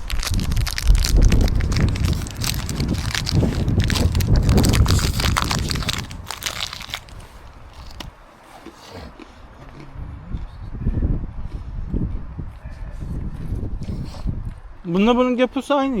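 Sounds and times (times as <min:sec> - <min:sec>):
dense crunching and crackling: 0:00.0 - 0:09.4.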